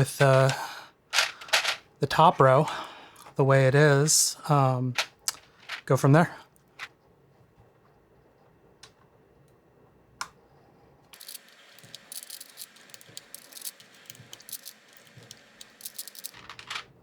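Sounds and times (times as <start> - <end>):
plastic keycaps clicking and clattering: 1.2 - 1.8, 5.0 - 5.9, 11.2 - 16.8.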